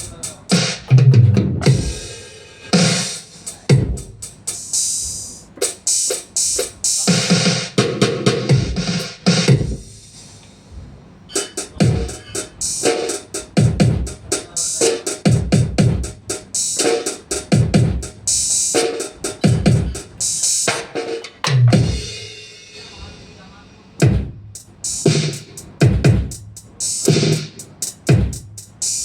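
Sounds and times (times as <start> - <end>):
electronic drum beat: 0.0 - 10.4, 11.3 - 23.2, 24.0 - 29.0
kick drum: 0.9 - 2.1, 3.7 - 4.2, 7.8 - 10.0, 11.8 - 12.2, 13.5 - 14.3, 15.3 - 16.2, 17.5 - 18.2, 19.4 - 20.0, 21.5 - 22.1, 24.0 - 24.5, 25.8 - 26.5, 28.1 - 28.6.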